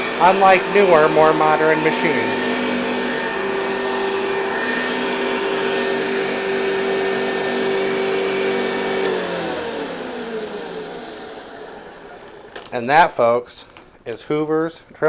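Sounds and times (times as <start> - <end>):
vacuum cleaner running: 0.0 - 12.7
vacuum switch click: 9.0 - 9.3.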